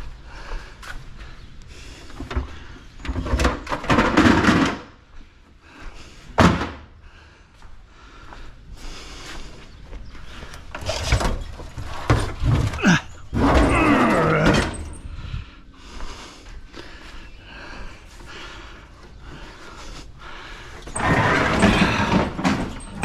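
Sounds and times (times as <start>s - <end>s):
scrap metal clanking: 20.8s - 23.0s.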